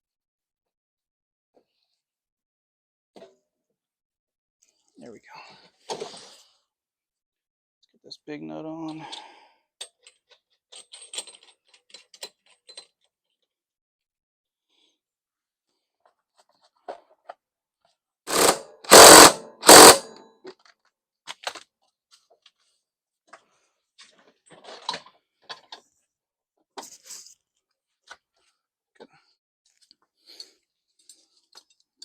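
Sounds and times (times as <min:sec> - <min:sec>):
power impact tool bursts: 0:18.3 - 0:20.2
tools clicking: 0:18.3 - 0:20.2.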